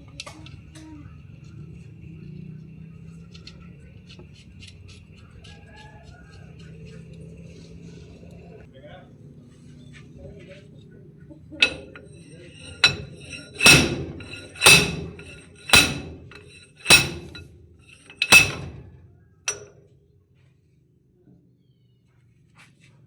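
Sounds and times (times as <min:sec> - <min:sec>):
hammer striking metal: 0:11.6 - 0:19.7.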